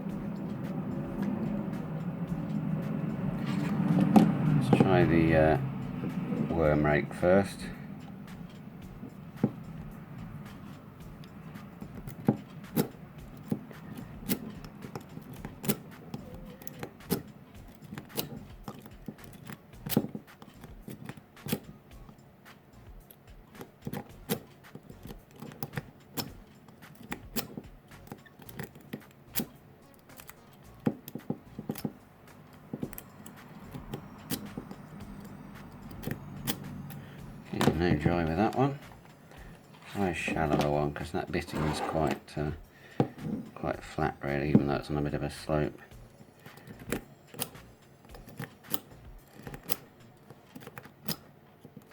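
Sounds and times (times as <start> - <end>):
metallic clicks of lock picking: 11.1 - 22.0, 23.0 - 37.0, 45.9 - 51.9.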